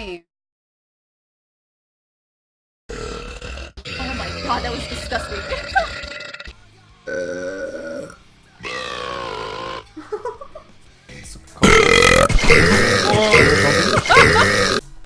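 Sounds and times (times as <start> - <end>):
women belching loudly: 2.9 - 6.5, 7.1 - 10.0, 11.6 - 14.9.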